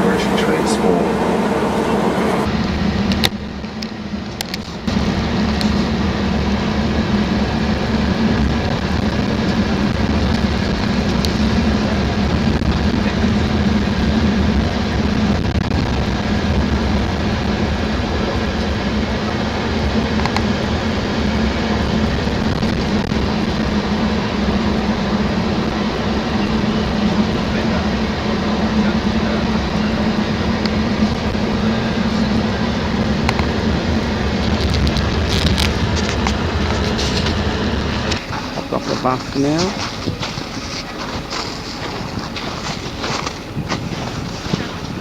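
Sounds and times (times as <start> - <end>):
coach engine and road noise: 0.0 - 45.0.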